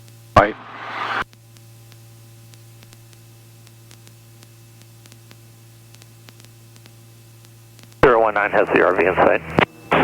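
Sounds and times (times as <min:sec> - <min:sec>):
electrical hum and hiss: 0:00.0 - 0:10.0
faint steady tones: 0:02.5 - 0:10.0.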